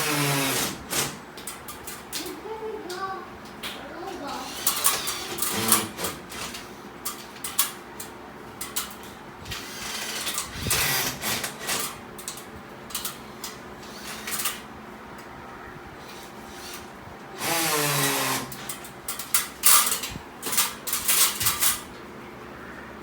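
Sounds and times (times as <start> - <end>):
electric drill boring into wall: 0.0 - 1.2, 4.5 - 6.1, 9.6 - 11.8, 17.4 - 18.6.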